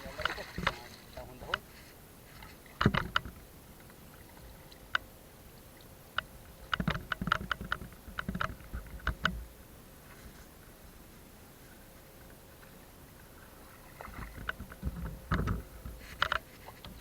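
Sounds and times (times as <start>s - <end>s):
knocks and clatter of boat gear: 0.0s - 4.0s, 6.2s - 9.5s, 14.0s - 17.0s.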